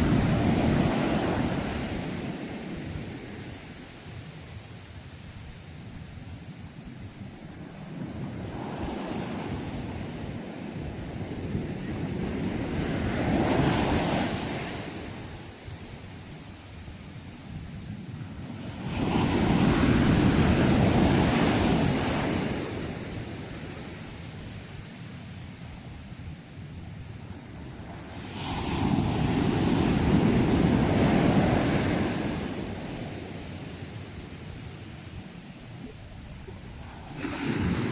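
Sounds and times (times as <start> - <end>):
ocean waves breaking on shore: 0.0 - 16.9, 18.1 - 37.9
low rumble of sea: 0.0 - 37.9
ocean wave breaking: 35.4 - 37.9.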